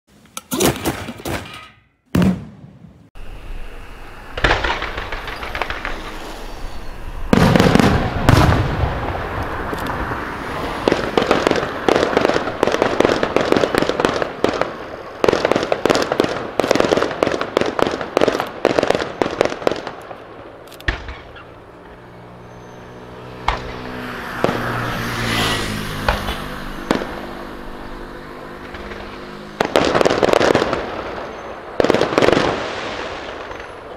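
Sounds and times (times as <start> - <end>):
heavy fireworks booms: 2.1 - 3.4, 4.1 - 21.6, 26.0 - 27.3, 28.6 - 33.9
fireworks bursting and crackling: 2.1 - 22.4, 23.1 - 33.9.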